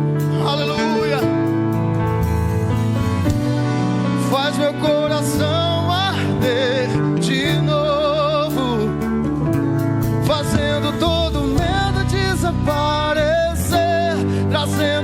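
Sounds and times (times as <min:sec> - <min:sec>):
lead voice holding wordless notes: 0:00.0 - 0:01.8, 0:10.2 - 0:15.0
gospel worship band: 0:00.0 - 0:15.0.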